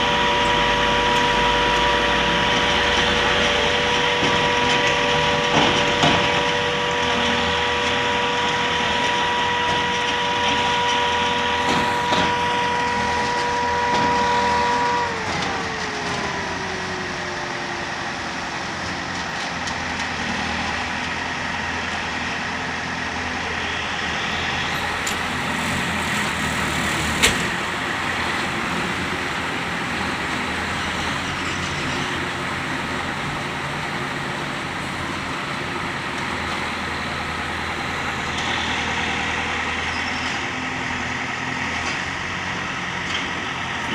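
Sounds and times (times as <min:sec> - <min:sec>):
heavy machine engine whining: 0:00.0 - 0:43.9.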